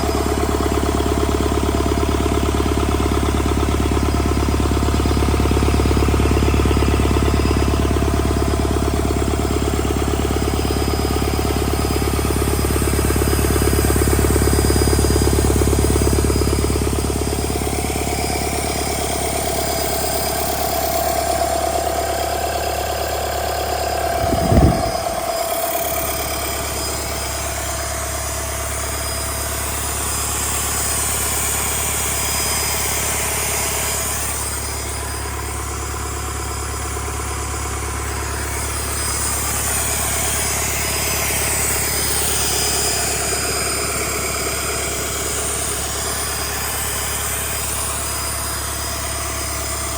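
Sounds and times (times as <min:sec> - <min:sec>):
diesel engine running: 0:00.0 - 0:49.9.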